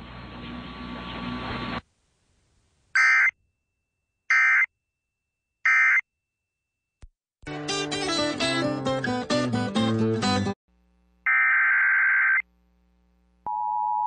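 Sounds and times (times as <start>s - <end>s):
receiver hiss: 0.0s - 3.0s.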